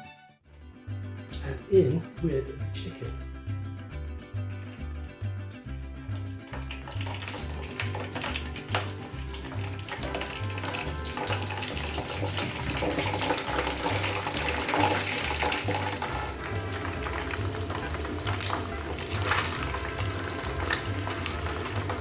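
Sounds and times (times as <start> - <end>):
background music with bass line: 0.0 - 22.0
chicken deep-frying in hot fat: 5.7 - 22.0.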